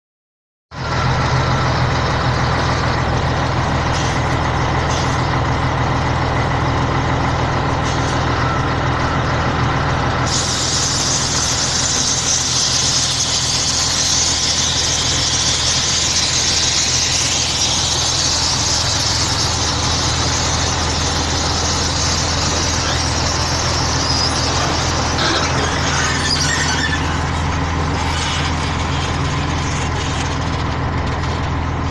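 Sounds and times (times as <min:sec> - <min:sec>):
truck diesel engine running: 0:00.8 - 0:31.9
loud high hiss: 0:10.3 - 0:25.2.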